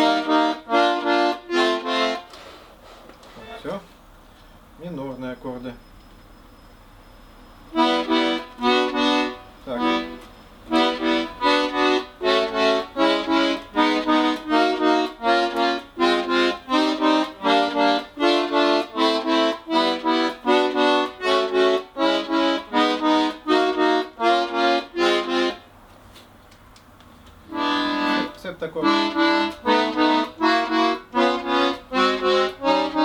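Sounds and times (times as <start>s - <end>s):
bayan short chords: 0.0s - 2.3s, 7.7s - 25.8s, 27.4s - 33.0s.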